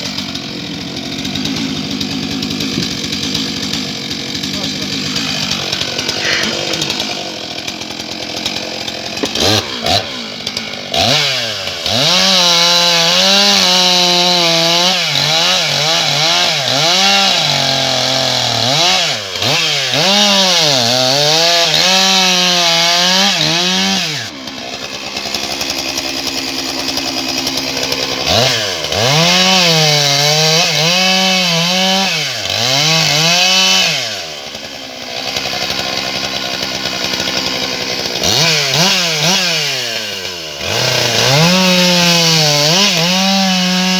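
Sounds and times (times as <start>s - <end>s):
chainsaw cutting logs: 0.0s - 43.9s.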